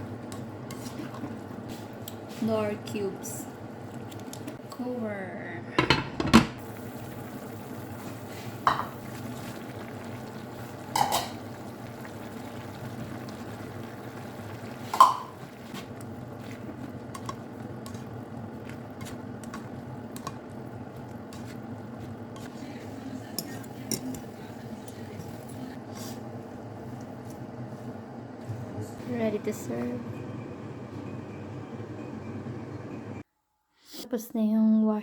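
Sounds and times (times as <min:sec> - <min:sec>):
metal cookware clanking: 0:10.9 - 0:11.5, 0:14.9 - 0:15.4, 0:23.3 - 0:25.0.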